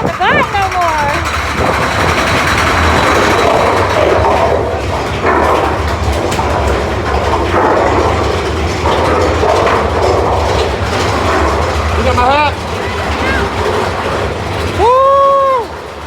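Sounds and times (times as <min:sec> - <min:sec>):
roller coaster rattling on track: 0:00.0 - 0:16.0.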